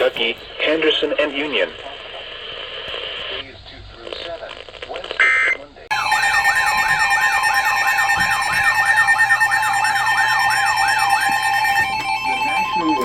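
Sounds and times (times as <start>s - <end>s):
warbling electronic alarm tone: 5.9s - 13.0s.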